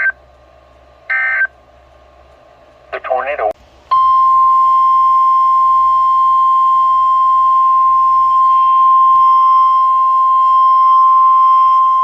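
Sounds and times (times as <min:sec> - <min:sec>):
steady single-pitch alarm tone: 0:03.9 - 0:12.0.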